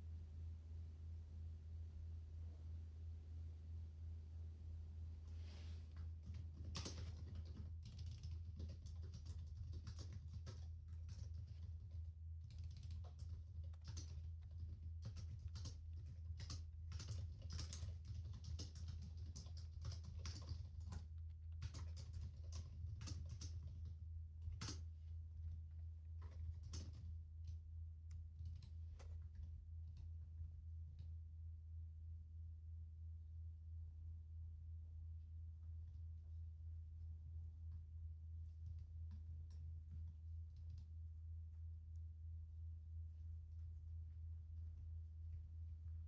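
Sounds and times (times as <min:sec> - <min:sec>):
steady low hum: 0:00.0 - 0:46.0
computer keyboard typing: 0:06.2 - 0:25.6, 0:26.2 - 0:27.6, 0:28.4 - 0:30.0.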